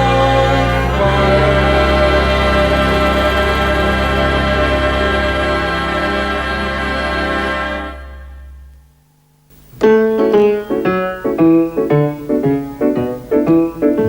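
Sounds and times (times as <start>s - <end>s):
long held chord: 0.0s - 8.8s
lively piano tune: 9.8s - 14.0s.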